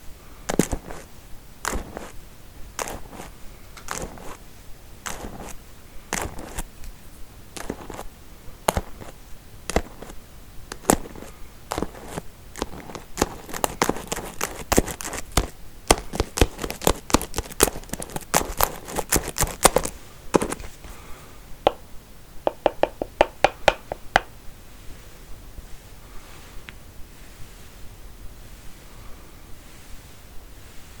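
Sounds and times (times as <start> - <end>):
hair combs clicking and tapping: 22.5 - 24.3.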